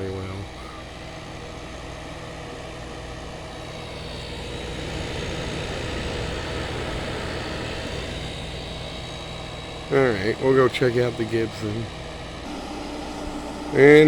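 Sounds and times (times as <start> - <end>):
air conditioner humming: 0.0 - 14.0.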